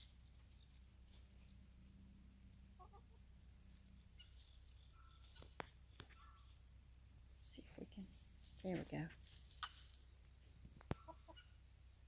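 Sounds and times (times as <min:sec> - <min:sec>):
chicken clucking: 0:02.6 - 0:06.6, 0:10.4 - 0:11.7.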